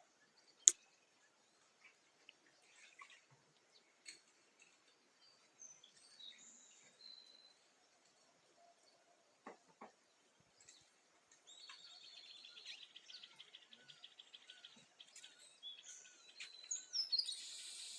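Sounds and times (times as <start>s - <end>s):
bird chirps: 10.6s - 17.9s.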